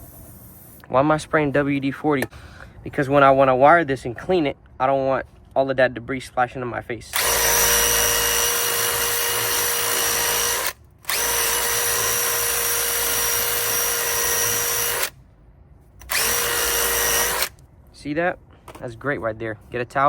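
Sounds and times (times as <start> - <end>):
power drill spinning wire brush: 7.2 - 15.1, 16.0 - 17.6.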